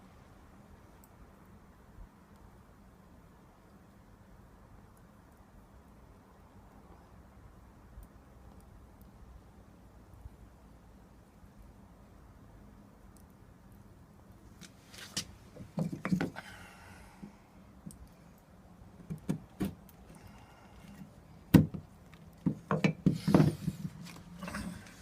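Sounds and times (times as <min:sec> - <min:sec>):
wood knocking and clattering: 0:15.6 - 0:16.4, 0:19.0 - 0:19.8, 0:21.5 - 0:24.7.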